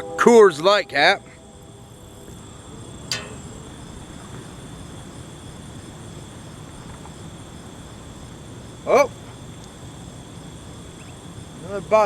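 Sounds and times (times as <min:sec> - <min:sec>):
crickets trilling: 0:00.0 - 0:12.0
sharp click: 0:03.1 - 0:03.6.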